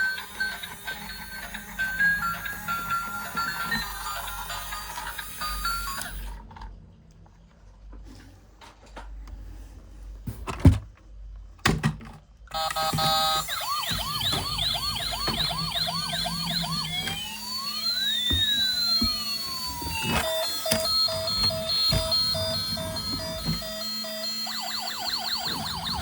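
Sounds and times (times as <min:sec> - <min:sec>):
toy electronic siren: 0:00.0 - 0:06.4, 0:12.5 - 0:26.0.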